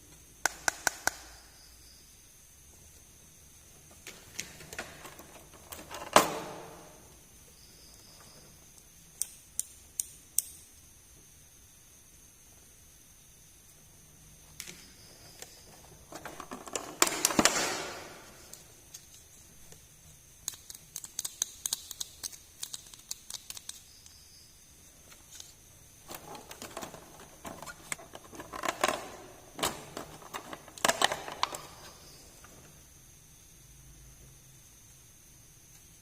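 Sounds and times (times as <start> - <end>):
plastic toy pieces clicking: 20.4 - 23.9, 27.9 - 31.8.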